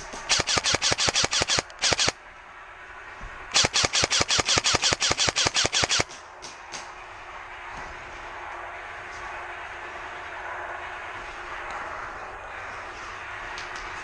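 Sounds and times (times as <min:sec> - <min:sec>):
airsoft gun firing full auto: 0:00.3 - 0:02.2, 0:03.5 - 0:06.2.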